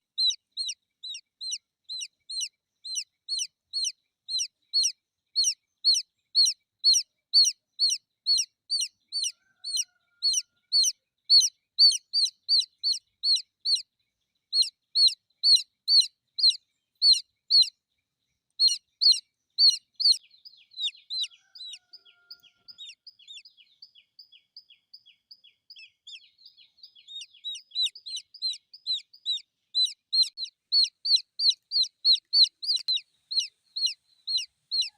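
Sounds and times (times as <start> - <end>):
chick peeping: 0.2 - 13.9, 14.5 - 17.7, 18.6 - 34.9.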